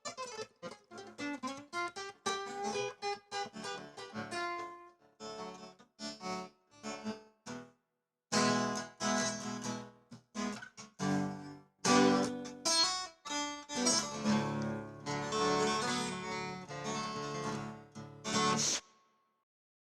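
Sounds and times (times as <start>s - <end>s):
acoustic guitar strumming: 11.0s - 18.7s.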